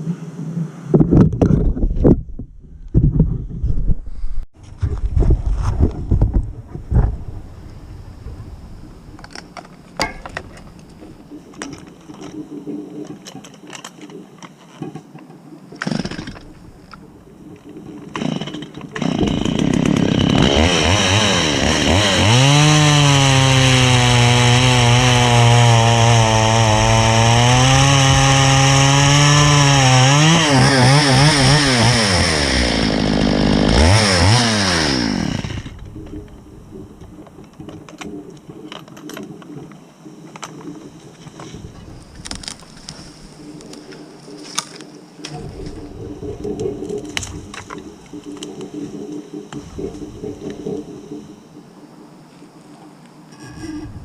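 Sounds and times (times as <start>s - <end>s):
chainsaw revving: 18.1s - 36.0s.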